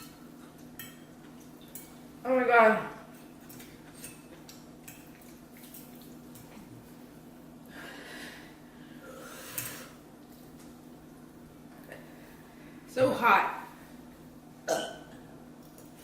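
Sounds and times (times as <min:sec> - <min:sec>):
person breathing hard: 0:07.7 - 0:10.0.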